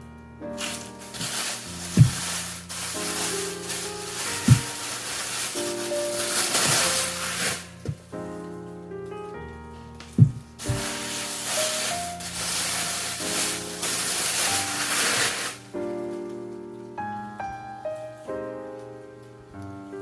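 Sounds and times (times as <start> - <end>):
background music with sustained notes: 0.0 - 20.0
loud hissing noise: 0.6 - 8.1, 10.2 - 15.7.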